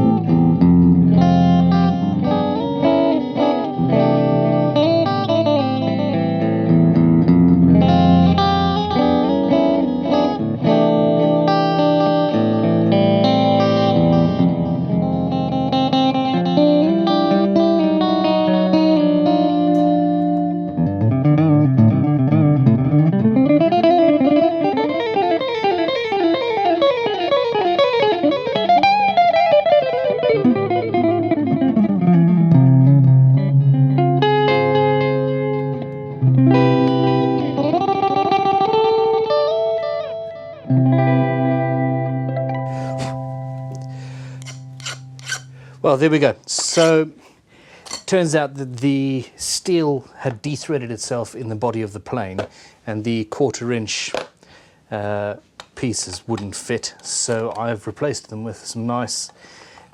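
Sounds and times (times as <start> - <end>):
electric guitar music: 0.0 - 48.8.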